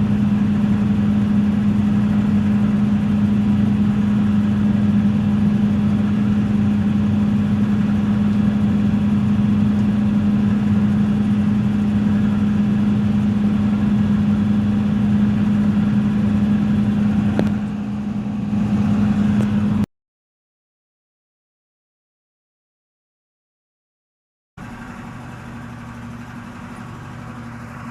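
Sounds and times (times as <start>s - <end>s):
excavator diesel engine humming: 0.0s - 19.9s, 24.6s - 27.9s
click: 17.4s - 17.6s.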